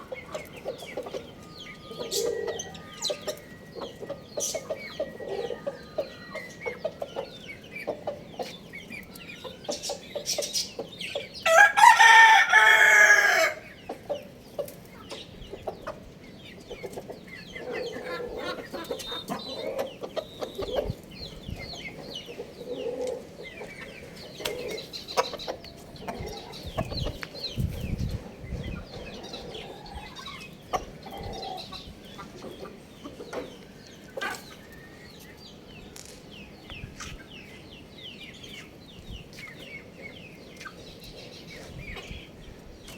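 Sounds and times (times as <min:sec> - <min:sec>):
chickens clucking: 0:00.0 - 0:42.9
rooster crowing: 0:11.5 - 0:13.6.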